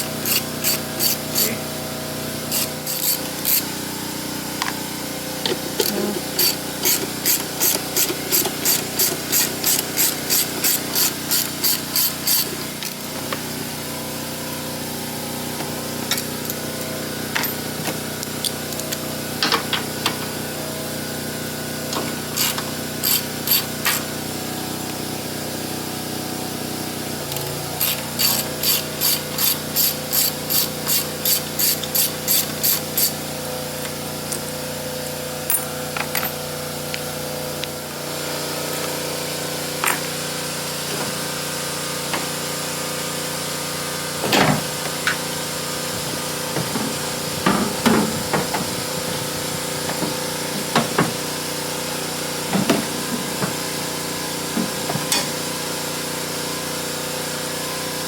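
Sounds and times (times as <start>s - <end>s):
ratchet wrench clicking: 0.0s - 1.6s, 2.5s - 3.7s, 5.5s - 13.1s, 22.3s - 24.1s, 27.3s - 33.2s
steady mechanical hum: 0.0s - 58.0s.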